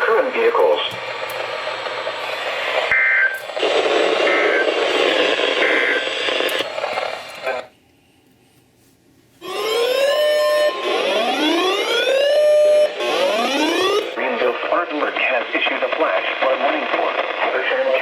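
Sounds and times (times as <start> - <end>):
radio broadcast hiss: 0.0 - 7.8, 13.6 - 18.0
upward sweeping tones: 9.4 - 14.2.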